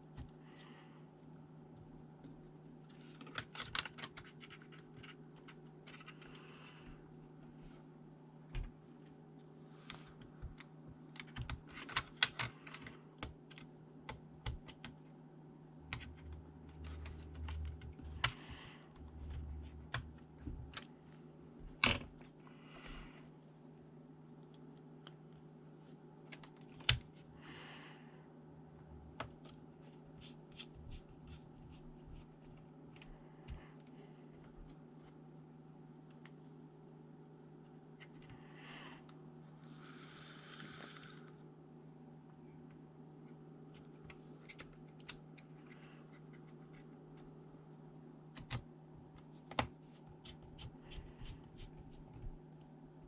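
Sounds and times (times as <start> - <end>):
steady low hum: 0.0 - 53.0
hands tapping laptop parts: 10.3 - 15.0, 48.3 - 52.4.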